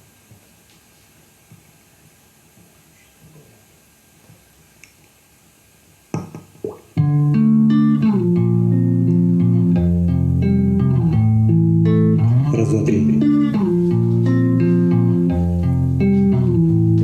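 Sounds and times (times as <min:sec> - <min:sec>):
karaoke backing track: 0:06.2 - 0:17.0.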